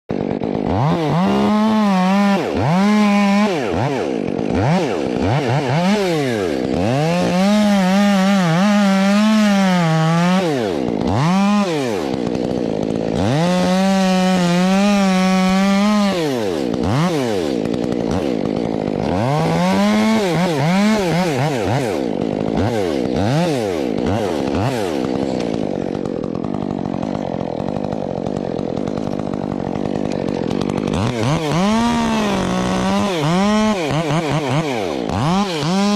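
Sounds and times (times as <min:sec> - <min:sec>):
chainsaw engine revving: 0:00.1 - 0:35.9.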